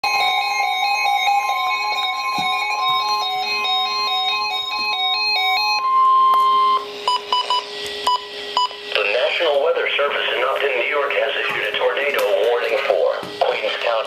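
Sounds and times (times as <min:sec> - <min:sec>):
electronic beeping melody: 0:00.0 - 0:09.0.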